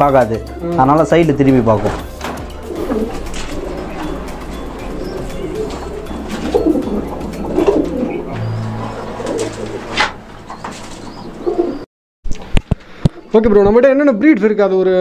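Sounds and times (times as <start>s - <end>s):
pigeons cooing: 2.0s - 11.9s.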